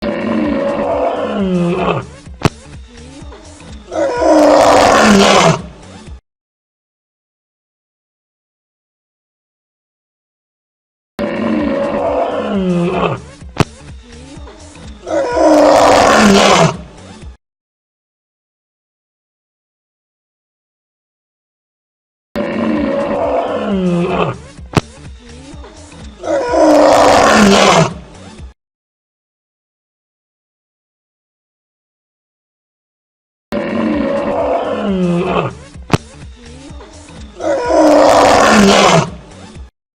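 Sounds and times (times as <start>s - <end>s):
lion grunting: 0.0s - 2.1s, 3.9s - 5.7s, 11.2s - 13.2s, 15.0s - 16.9s, 22.4s - 24.4s, 26.2s - 28.0s, 33.6s - 35.6s, 37.4s - 39.2s
lion roaring: 0.0s - 2.1s, 3.9s - 5.7s, 11.2s - 13.2s, 15.0s - 16.9s, 22.4s - 24.4s, 26.2s - 28.0s, 33.5s - 35.6s, 37.4s - 39.2s.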